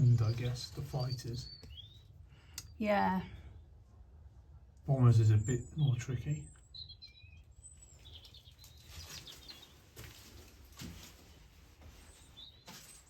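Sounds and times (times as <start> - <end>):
small birds chirping: 0.0 - 3.8, 4.7 - 13.0
soft rustles: 8.2 - 13.0.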